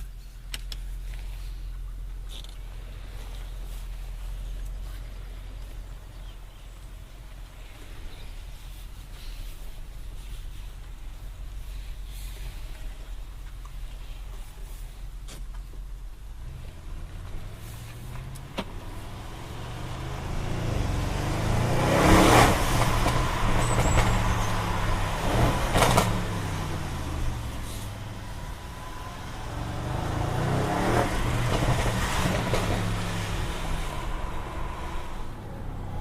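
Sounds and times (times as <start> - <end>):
exhaust cracks: 15.1 - 36.0
car engine accelerating hard: 16.4 - 36.0.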